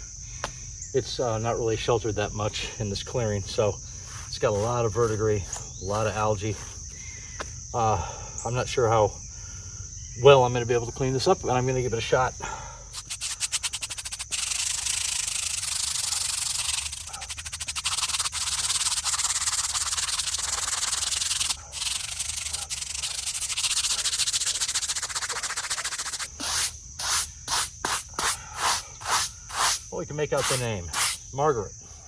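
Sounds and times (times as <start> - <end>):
brush scrubbing stone: 4.1 - 5.4, 12.9 - 31.2.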